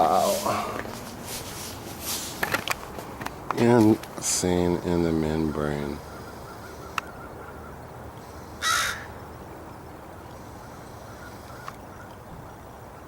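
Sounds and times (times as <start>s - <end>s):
crow cawing: 6.0s - 9.2s, 10.5s - 12.1s.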